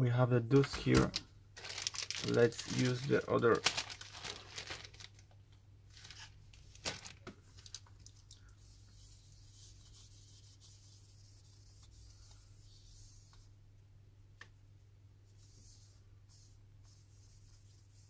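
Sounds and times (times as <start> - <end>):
low steady hum: 0.0 - 18.0
rubbing on a screen: 8.6 - 13.5, 15.3 - 18.0.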